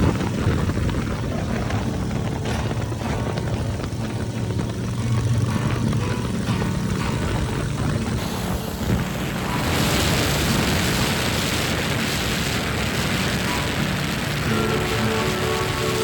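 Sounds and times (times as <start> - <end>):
motorcycle engine running: 0.0 - 16.0
wind noise on microphone: 0.0 - 16.0.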